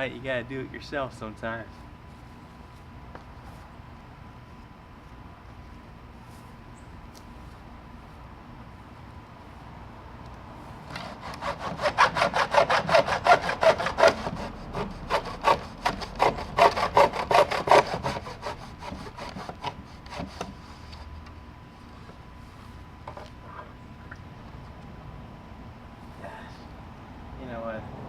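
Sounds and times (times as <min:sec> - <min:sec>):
hand saw cutting wood: 0:10.9 - 0:21.1.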